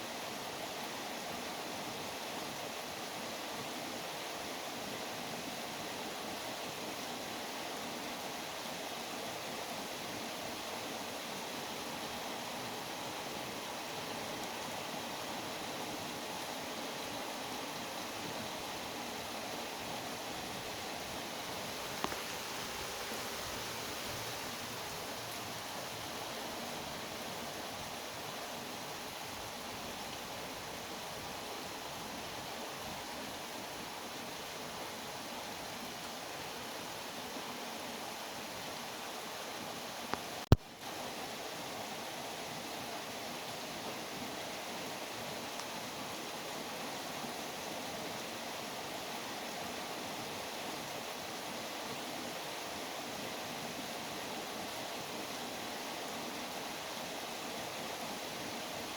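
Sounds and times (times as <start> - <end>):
steady rainfall: 0.0 - 58.9.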